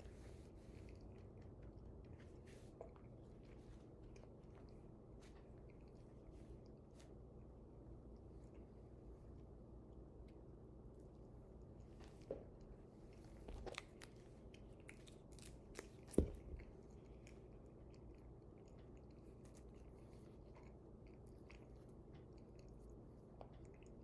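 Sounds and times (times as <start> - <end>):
person chewing banana: 0.8 - 6.9, 13.1 - 24.0.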